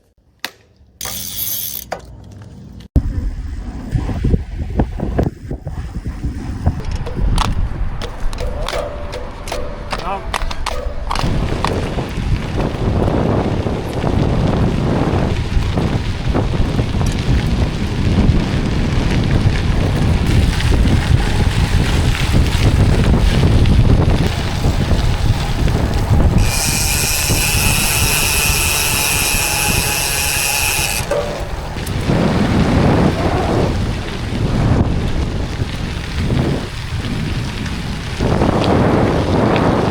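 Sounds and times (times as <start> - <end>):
wind buffeting microphone: 3.0 - 39.9
bike tyres crunching on gravel: 11.2 - 39.9
high steady buzz: 26.2 - 31.8.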